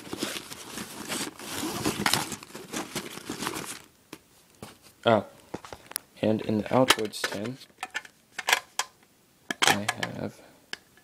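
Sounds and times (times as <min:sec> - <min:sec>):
nylon bag rustling and crinkling: 0:00.0 - 0:03.9.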